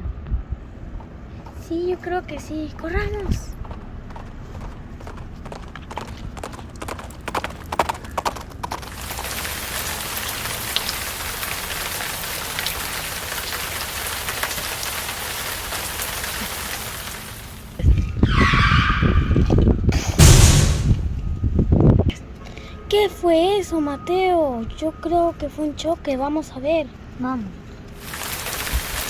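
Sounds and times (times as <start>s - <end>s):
horse hooves clip-clop: 1.0s - 17.5s
rain stick patter: 8.9s - 17.8s, 27.9s - 29.0s
loud crash: 18.5s - 21.6s.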